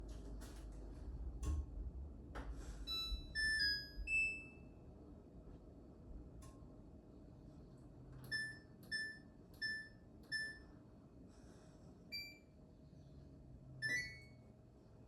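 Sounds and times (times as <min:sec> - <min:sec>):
brief beep: 0:13.8 - 0:14.4.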